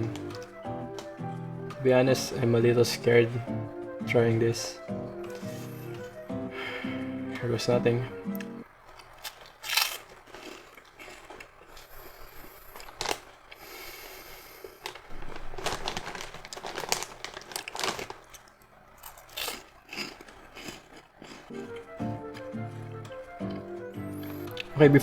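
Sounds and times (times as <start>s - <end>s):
plastic bag crinkling: 0.0s - 1.1s, 8.8s - 21.5s
crunchy chewing of snack: 0.0s - 1.2s, 8.4s - 22.5s.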